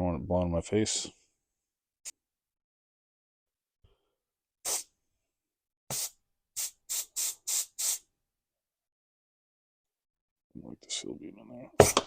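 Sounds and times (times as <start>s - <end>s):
compressed air bursts: 4.6s - 4.9s, 5.9s - 8.1s.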